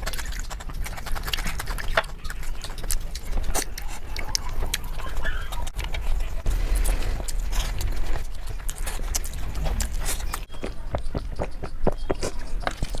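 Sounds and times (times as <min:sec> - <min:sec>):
wet mouth clicks and lip smacks: 0:00.0 - 0:05.9
close-miked chewing: 0:00.0 - 0:13.0.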